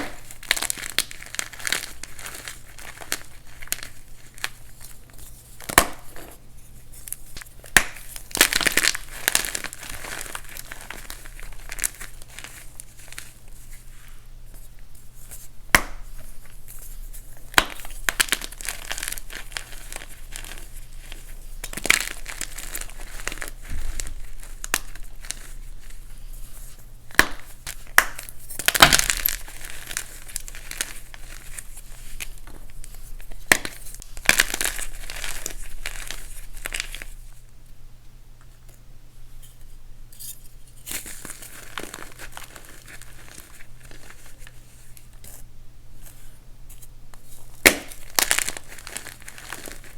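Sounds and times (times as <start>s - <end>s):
chalk crunching and crumbling: 16.2s - 37.2s, 46.0s - 49.9s.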